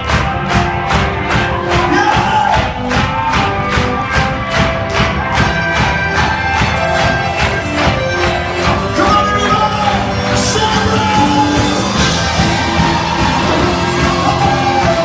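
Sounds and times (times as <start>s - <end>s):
worship band playing: 0.0s - 15.0s
voices singing: 12.4s - 15.0s.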